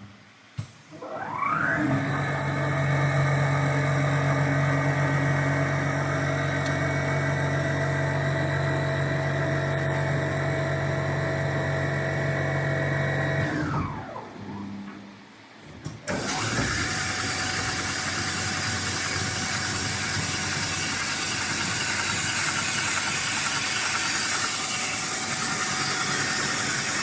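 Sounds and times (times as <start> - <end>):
machine motor whining: 16.1 - 27.0.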